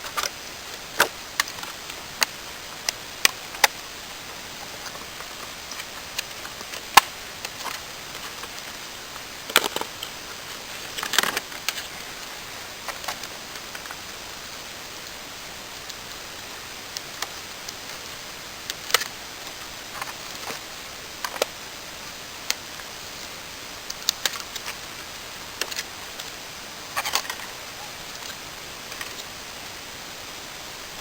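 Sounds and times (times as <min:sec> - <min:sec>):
steady hiss: 0:00.0 - 0:31.0
small clicks taps and scrapes: 0:01.0 - 0:10.2, 0:21.2 - 0:21.5, 0:23.9 - 0:26.4.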